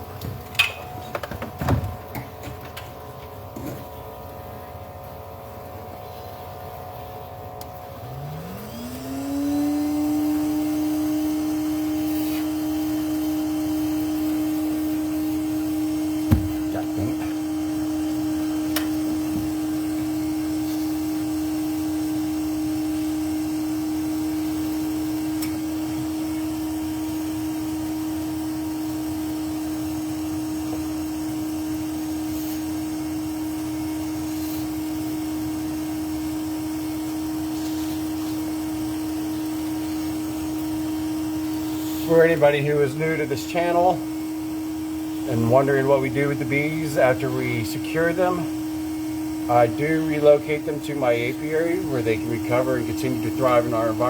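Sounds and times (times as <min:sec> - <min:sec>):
vacuum motor whine: 0:00.0 - 0:54.0
short knocks: 0:16.3 - 0:16.6.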